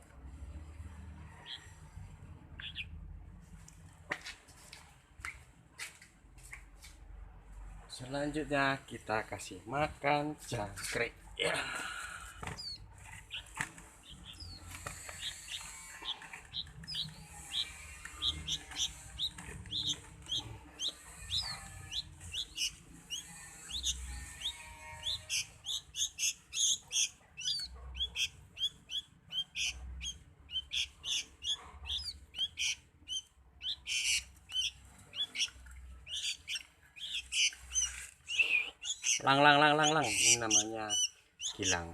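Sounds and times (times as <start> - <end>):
songbird chirping: 2.5 - 3.0, 11.6 - 41.9.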